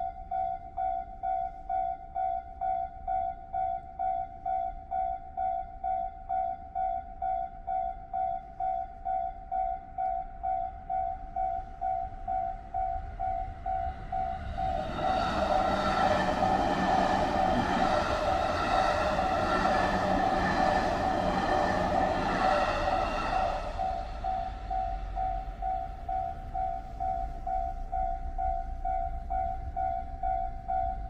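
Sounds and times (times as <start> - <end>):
train passing: 9.6 - 31.0.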